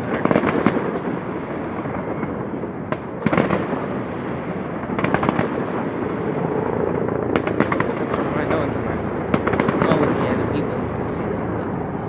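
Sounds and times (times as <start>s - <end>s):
rapid crackling pops: 0.0s - 10.6s
fireworks exploding: 0.0s - 11.8s.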